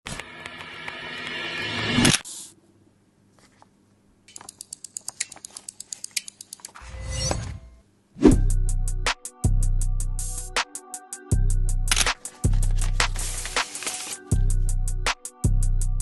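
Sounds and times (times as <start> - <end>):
mechanical keyboard typing: 4.3 - 6.8.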